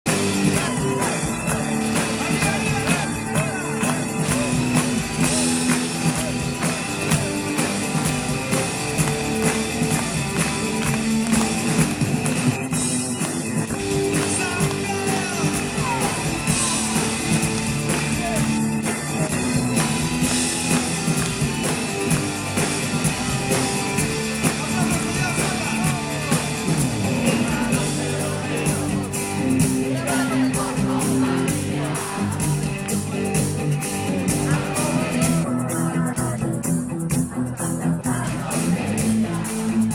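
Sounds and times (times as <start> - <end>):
rock music with guitars: 0.1 - 39.9
person singing: 14.1 - 18.6, 34.3 - 39.9.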